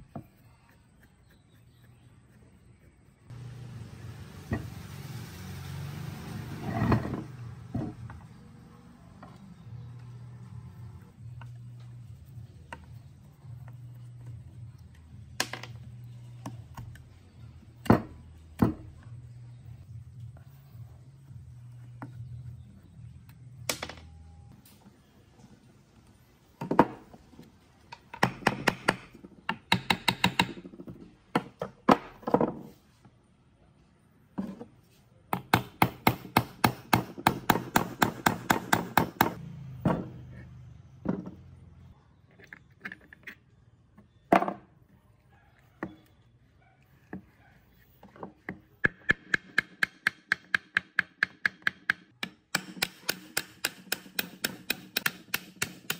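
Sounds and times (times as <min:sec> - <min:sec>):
hand tools tapping and knocking: 0:27.9 - 0:32.7, 0:35.3 - 0:40.4, 0:48.0 - 0:55.9.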